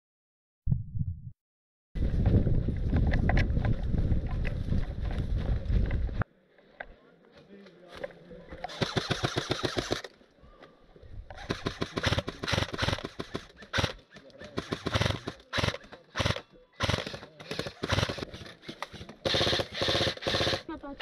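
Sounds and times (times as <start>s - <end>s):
airsoft guns firing full-auto: 8.7s - 10.1s, 11.4s - 20.7s.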